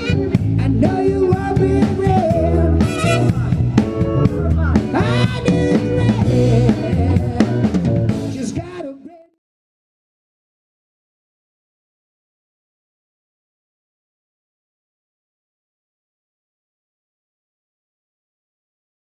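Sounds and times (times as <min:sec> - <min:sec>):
band playing: 0:00.0 - 0:09.2
person singing: 0:00.0 - 0:09.4.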